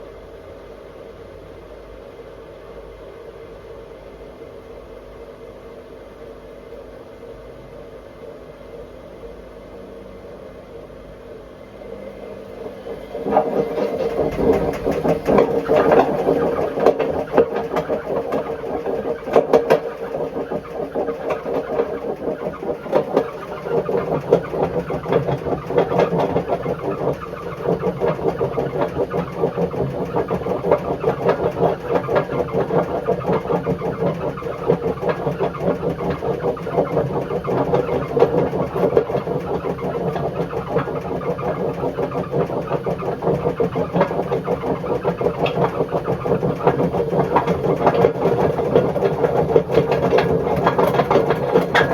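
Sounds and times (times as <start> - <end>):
washing machine grinding: 11.9 - 51.9
rapid irregular knocking: 12.6 - 51.9.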